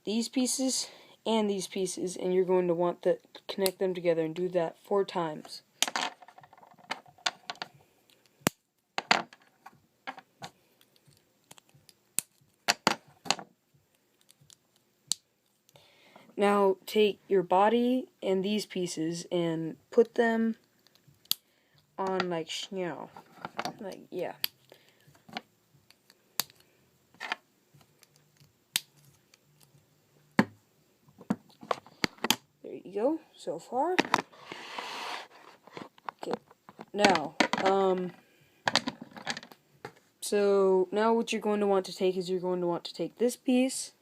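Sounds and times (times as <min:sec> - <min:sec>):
plastic bricks clicking and clattering: 0:36.0 - 0:37.8.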